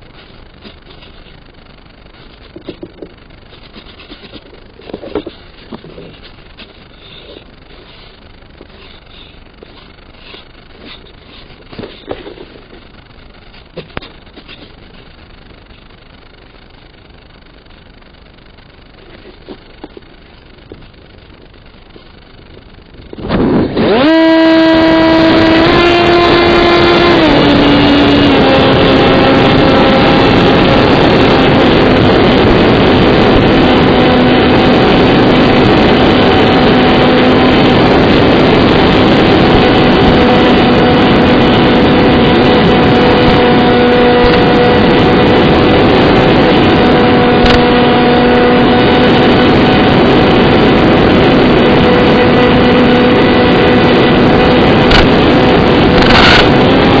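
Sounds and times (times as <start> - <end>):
electric motor and propeller buzzing: 0.0 - 16.0, 18.9 - 57.0
wind noise on microphone: 18.4 - 57.0.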